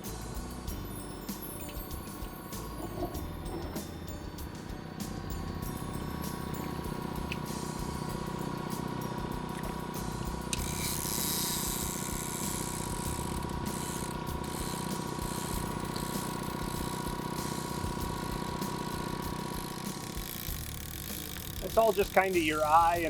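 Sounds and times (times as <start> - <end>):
steady motor hum: 1.7 - 23.0
fishing reel clicker ratcheting: 9.5 - 23.0.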